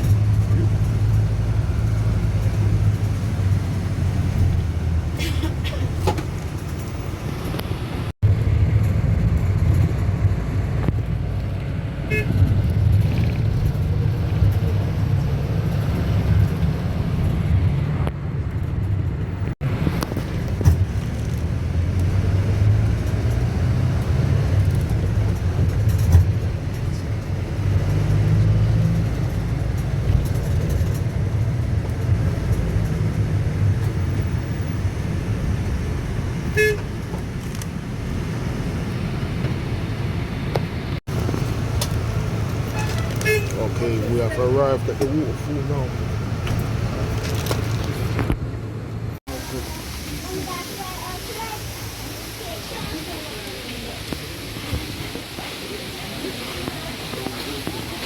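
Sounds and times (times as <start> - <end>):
vehicle engine and road rumble: 0.0 - 58.0
horn toot: 12.1 - 12.4, 36.5 - 36.9, 42.7 - 43.8.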